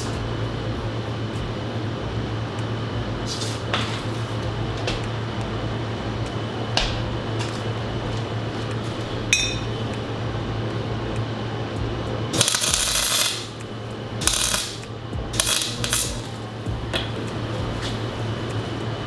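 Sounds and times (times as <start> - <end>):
crackling noise bursts: 0.0 - 19.0
steady low hum: 0.0 - 19.0
ringing metallic clink: 9.3 - 9.7.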